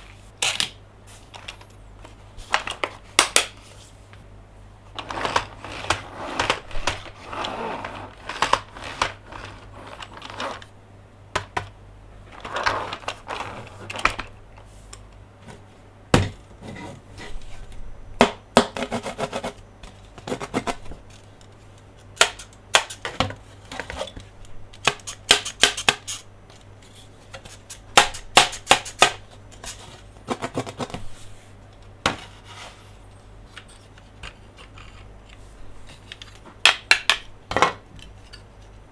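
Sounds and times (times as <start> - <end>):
toy pieces clicking and tapping: 22.0 - 23.1, 24.8 - 26.2, 27.5 - 29.2.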